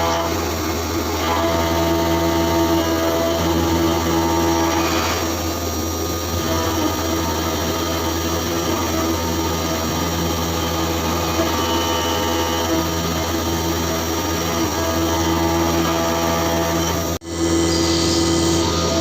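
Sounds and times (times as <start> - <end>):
milling machine hum and whine: 0.0 - 19.0.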